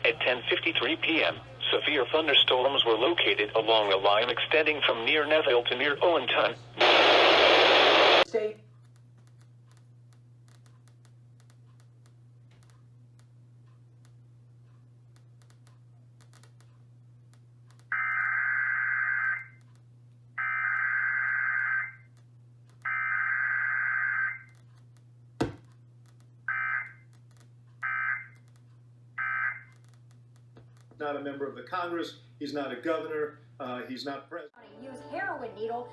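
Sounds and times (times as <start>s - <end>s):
low electrical hum: 0.0s - 35.9s
click: 19.6s - 19.8s, 22.2s - 22.9s, 28.3s - 28.8s.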